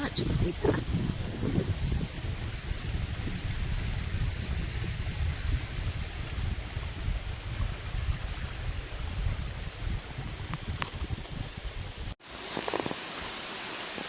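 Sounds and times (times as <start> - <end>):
wind buffeting microphone: 0.0 - 12.2
steady rushing hiss: 12.2 - 14.0.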